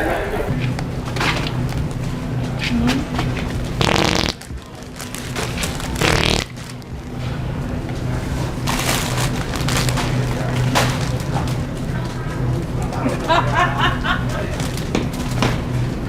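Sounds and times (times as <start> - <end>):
steady low hum: 0.0 - 16.0
wet fart sounds: 3.8 - 4.4, 5.9 - 6.6.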